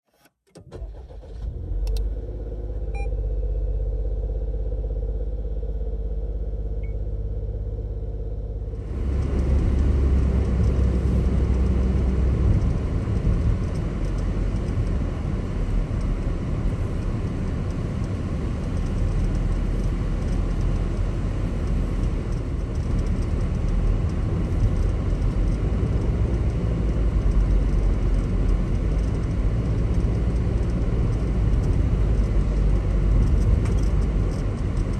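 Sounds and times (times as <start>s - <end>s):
car engine hum: 0.6s - 34.9s
tyre and road rumble: 8.7s - 34.9s.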